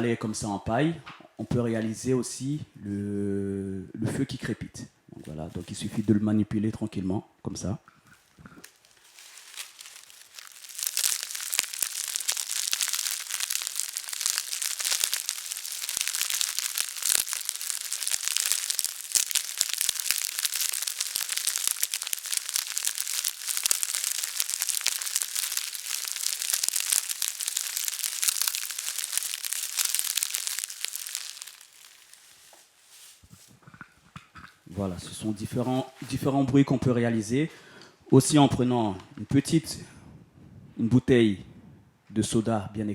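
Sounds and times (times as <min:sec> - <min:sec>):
straw broom crackling: 0:08.2 - 0:33.6, 0:34.7 - 0:36.4.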